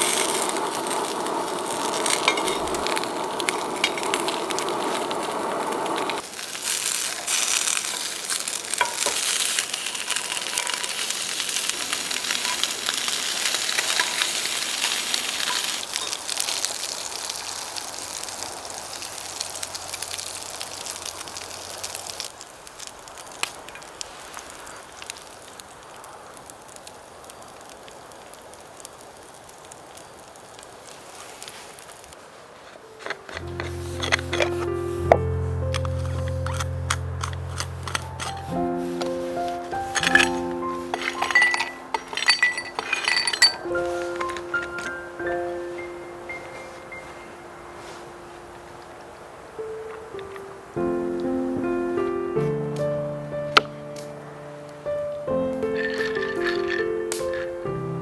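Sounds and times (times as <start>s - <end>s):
food sizzling in a pan: 0.0s - 32.1s, 32.8s - 47.2s
utensil stirring clicks: 33.0s - 34.7s, 35.7s - 44.9s, 55.6s - 57.5s.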